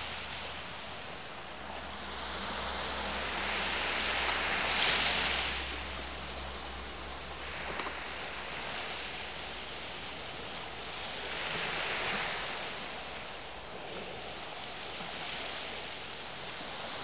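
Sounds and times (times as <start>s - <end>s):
sea waves breaking on a beach: 0.0s - 17.0s.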